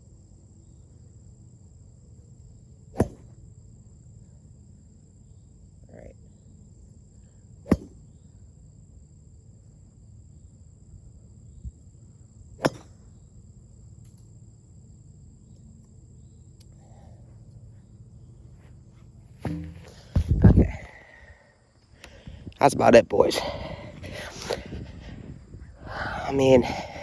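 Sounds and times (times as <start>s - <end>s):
golf driver striking ball: 3.0s - 3.3s, 7.7s - 8.0s, 12.6s - 13.0s, 19.4s - 20.6s.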